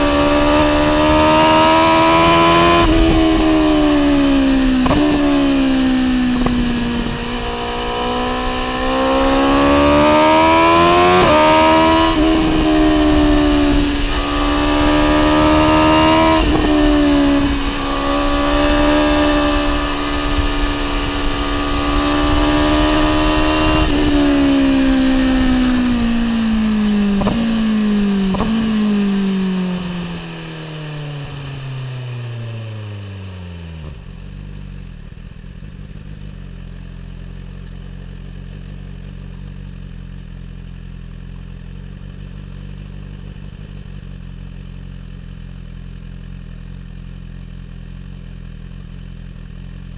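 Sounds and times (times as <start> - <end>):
wind noise: 0.0 - 31.9
motorcycle engine: 0.0 - 49.9.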